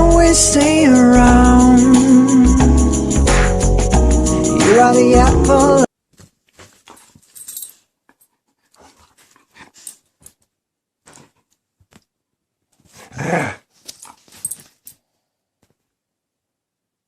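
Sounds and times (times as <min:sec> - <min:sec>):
dog growling and huffing: 0:12.9 - 0:14.2.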